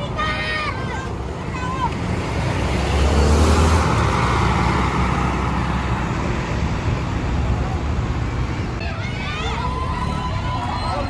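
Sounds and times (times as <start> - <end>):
steady traffic noise: 0.0 - 11.0
heavy vehicle passing close: 1.0 - 8.8.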